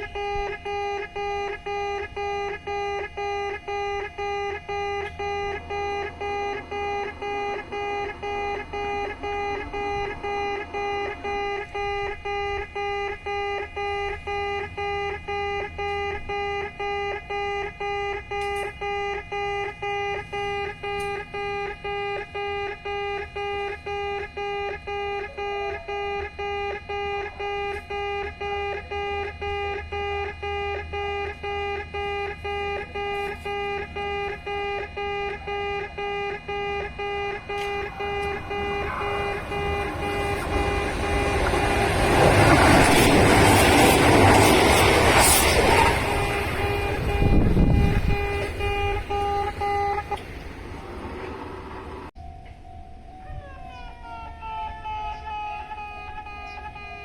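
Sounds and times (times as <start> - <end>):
level crossing alarm beeping: 0.0 - 57.0
approaching train: 4.9 - 12.7, 35.2 - 56.2.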